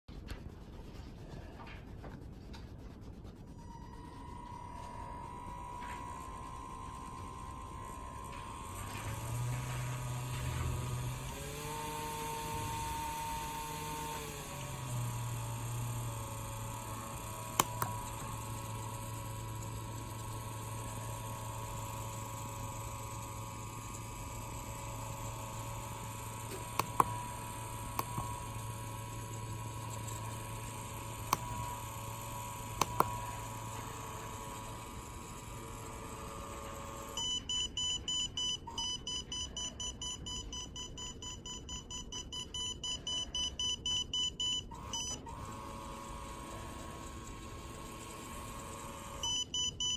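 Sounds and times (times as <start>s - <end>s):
small fan motor humming: 2.5s - 49.9s
piezo buzzer beeping: 14.8s - 49.9s
sharp clicks: 17.5s - 18.3s, 26.4s - 28.6s, 29.8s - 32.0s, 32.6s - 33.8s.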